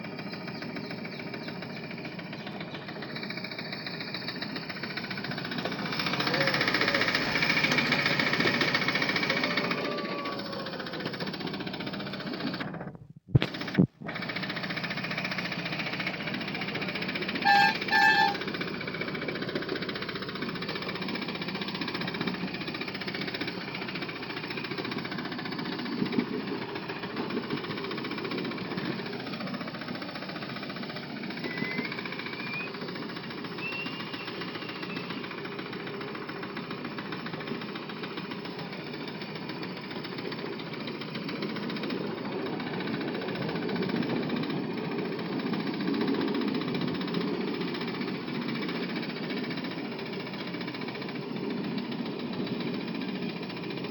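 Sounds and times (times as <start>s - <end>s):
miniature train wheels clattering: 0.0s - 53.9s
train horn toots: 17.3s - 18.6s.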